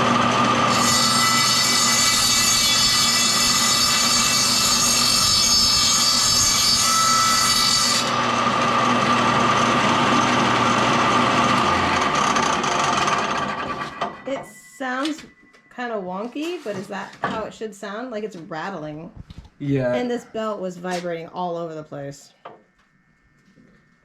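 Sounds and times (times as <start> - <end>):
table saw running: 0.0 - 14.4.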